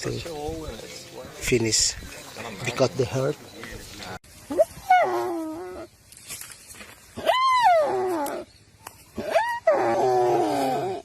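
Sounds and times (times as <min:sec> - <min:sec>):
deer bawling in distress: 0:09.2 - 0:11.0.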